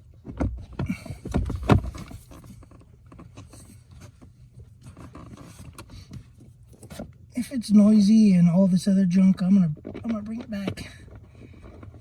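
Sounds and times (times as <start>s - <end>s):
knocks clunks and rattles: 0.2s - 3.7s.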